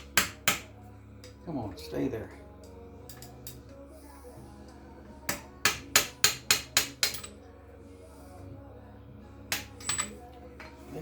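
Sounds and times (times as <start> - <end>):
hammer striking metal: 0.0 - 0.7, 5.3 - 7.4.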